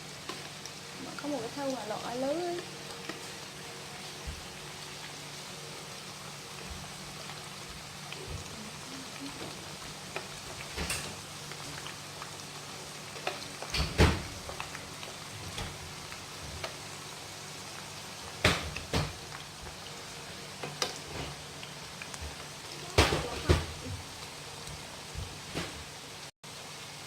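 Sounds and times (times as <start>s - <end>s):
food deep-frying in oil: 0.0s - 27.0s
kitchen utensils clattering: 10.7s - 11.2s.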